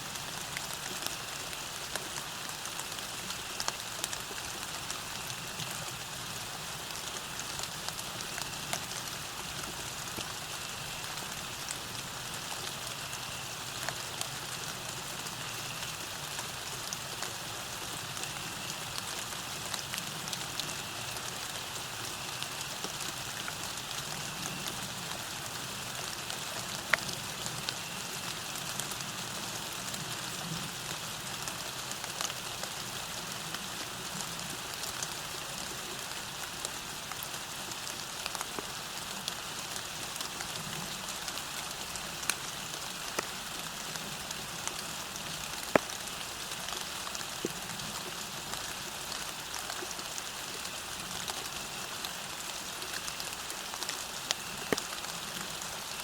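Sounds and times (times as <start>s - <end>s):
steady rain hiss: 0.0s - 56.0s
raindrops ticking: 18.0s - 56.0s.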